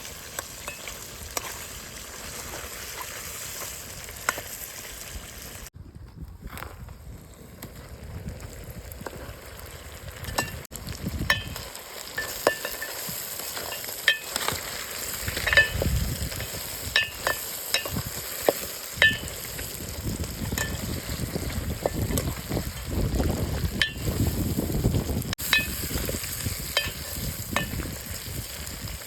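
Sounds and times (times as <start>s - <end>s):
food sizzling in a pot: 0.0s - 5.7s, 8.3s - 29.0s
metal spoon stirring: 12.2s - 19.7s, 26.6s - 27.8s
spoon clinking against pot: 16.9s - 19.4s, 25.5s - 25.8s, 26.8s - 27.8s.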